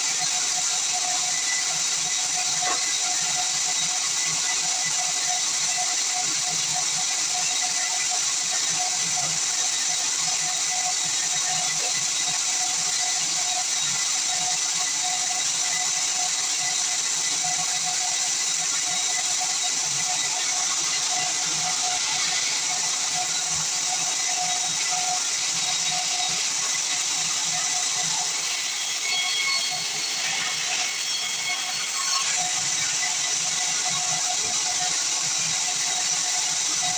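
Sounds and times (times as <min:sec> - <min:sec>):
band saw cutting log: 0:00.0 - 0:06.5, 0:17.3 - 0:36.9.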